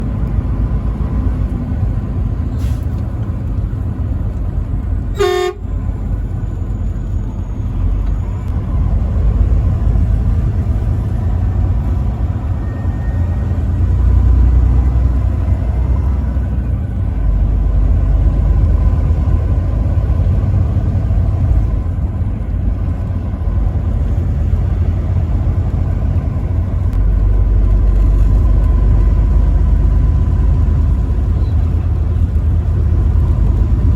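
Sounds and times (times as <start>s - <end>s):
vehicle driving on highway: 0.0s - 33.9s
truck horn blast: 5.1s - 5.7s.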